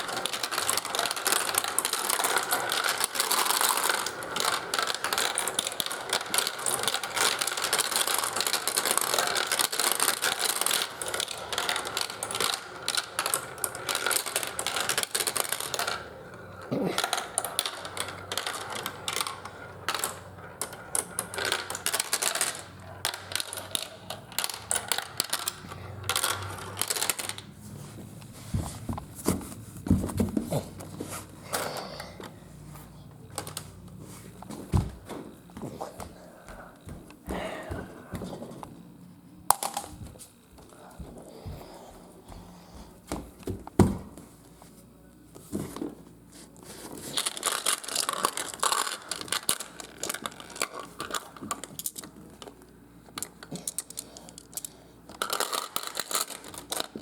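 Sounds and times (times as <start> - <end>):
marbles clattering down run: 0.0 - 27.5, 47.1 - 52.1.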